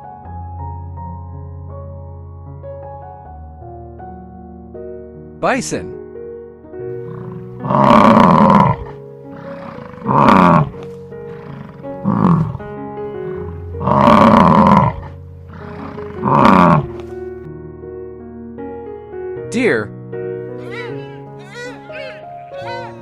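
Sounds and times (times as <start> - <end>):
soft background music: 0.0 - 23.0
bison bellowing: 7.0 - 17.0, 20.6 - 23.0.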